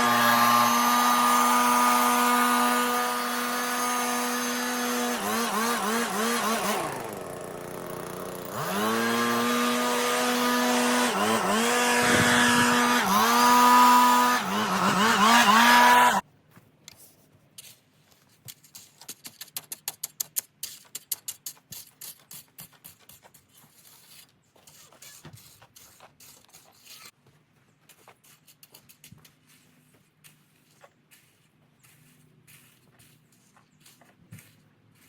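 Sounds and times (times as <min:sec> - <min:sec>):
chainsaw engine revving: 0:00.0 - 0:16.2.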